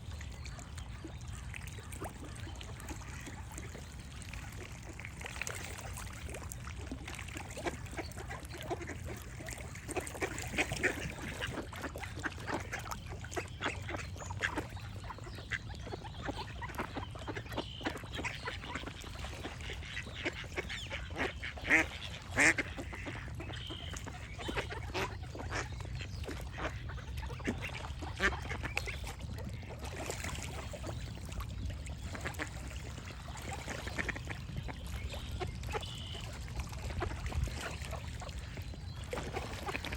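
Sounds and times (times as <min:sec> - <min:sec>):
ducks quacking: 0:07.6 - 0:31.2, 0:32.0 - 0:38.5.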